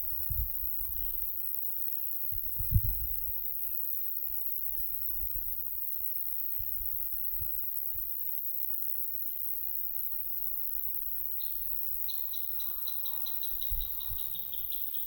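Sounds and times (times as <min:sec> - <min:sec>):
wind rumble on microphone: 0:00.0 - 0:01.2, 0:02.3 - 0:03.5.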